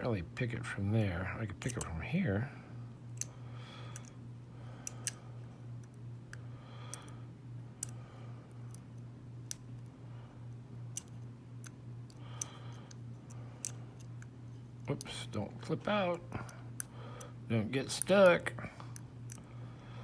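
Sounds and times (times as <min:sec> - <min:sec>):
lock pick clicking: 0:03.9 - 0:04.1, 0:04.8 - 0:05.2, 0:10.9 - 0:15.1.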